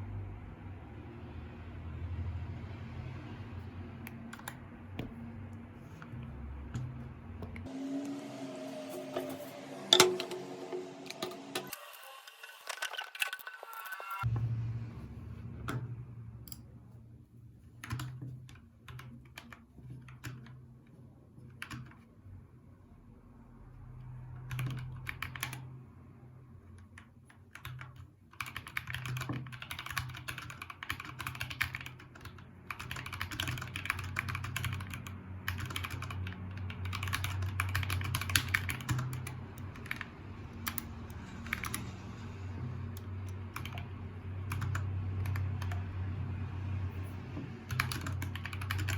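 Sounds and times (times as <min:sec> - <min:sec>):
mechanical keyboard typing: 0:21.5 - 0:22.0, 0:24.4 - 0:25.7, 0:27.0 - 0:41.9, 0:42.9 - 0:45.9, 0:47.6 - 0:48.9.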